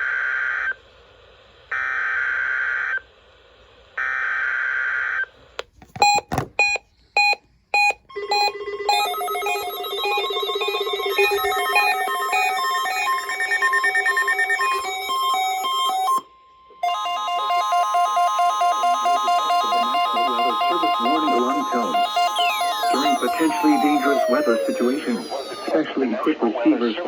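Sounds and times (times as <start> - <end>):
sharp beeps: 6.0 - 16.2, 16.8 - 25.8
fast warbling alert tones: 8.2 - 16.2, 16.8 - 25.8.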